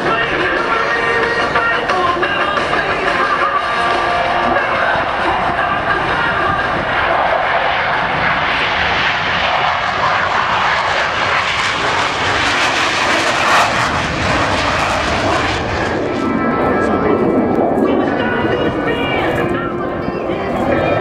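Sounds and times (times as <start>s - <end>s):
jet roar flying past: 0.0s - 21.0s.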